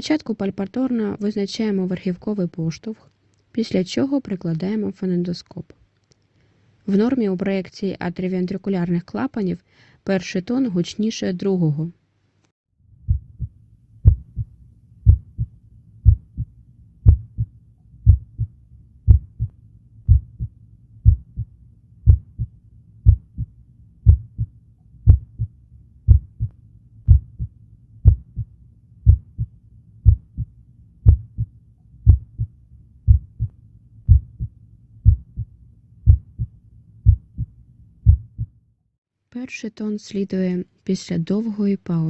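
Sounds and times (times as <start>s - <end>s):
heartbeat through stethoscope: 13.0s - 38.6s.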